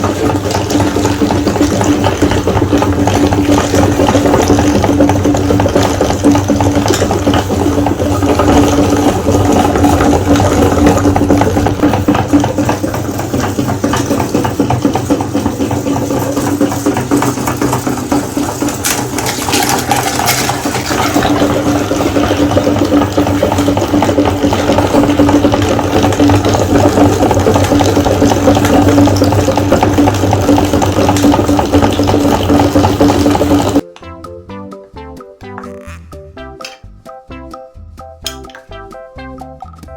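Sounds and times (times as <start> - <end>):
electric meat grinder running: 0.0 - 33.8.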